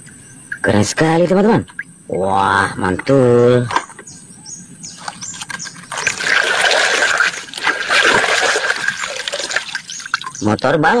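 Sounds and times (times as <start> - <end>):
water splashing over plastic toy: 5.0 - 10.8.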